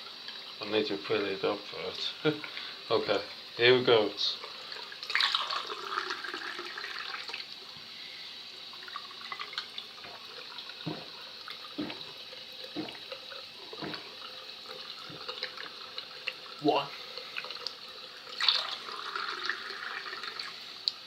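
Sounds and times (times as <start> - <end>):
tap running water: 0.0 - 21.0
person gulping water: 11.8 - 12.1.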